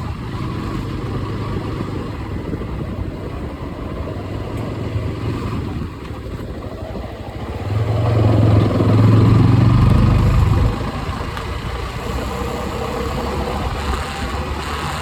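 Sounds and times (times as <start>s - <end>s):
motorcycle engine and exhaust running: 0.0s - 15.0s.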